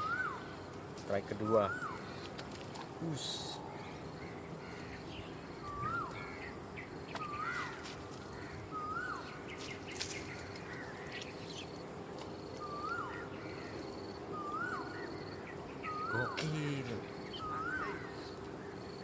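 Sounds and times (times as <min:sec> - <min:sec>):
high-pitched insect drone: 0:00.0 - 0:19.0
bird short call: 0:15.9 - 0:18.2.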